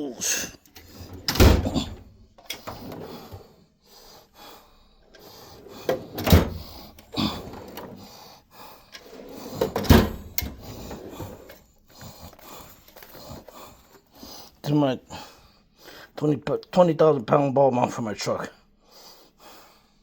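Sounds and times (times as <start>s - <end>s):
metal drawers shutting with clunks: 0.7s - 3.4s, 5.6s - 8.1s, 9.0s - 11.6s.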